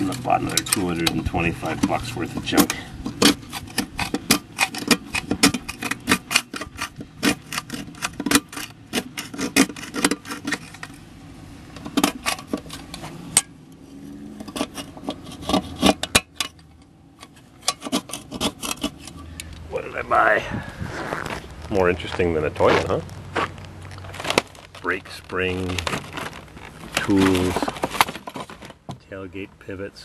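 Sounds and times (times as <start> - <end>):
small parts clicking and rattling: 0.0 - 11.0.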